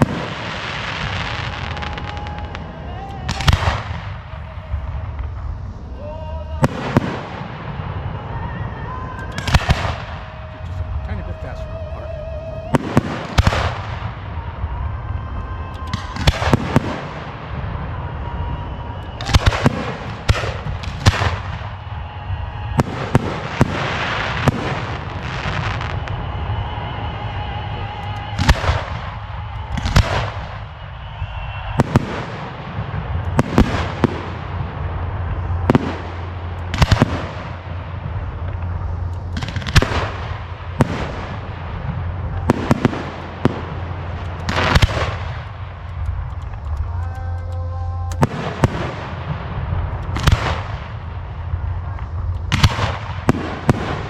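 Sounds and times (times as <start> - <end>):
firework shells booming: 0.0 - 47.3, 48.1 - 54.0.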